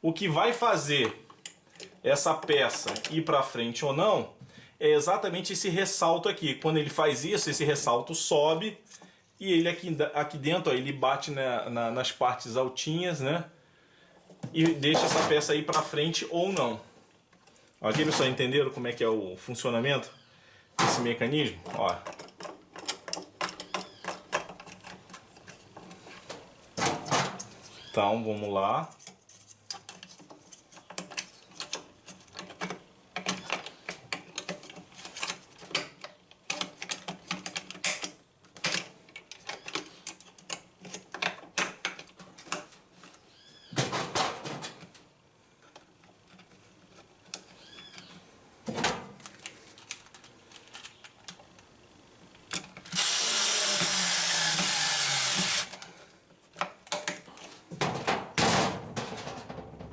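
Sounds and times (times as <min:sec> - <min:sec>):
plastic and metal parts clicking: 0:21.5 - 0:27.8, 0:28.9 - 0:43.2, 0:45.6 - 0:51.7, 0:52.3 - 0:55.9, 0:56.5 - 0:57.6
cordless screwdriver running: 0:52.9 - 0:55.8.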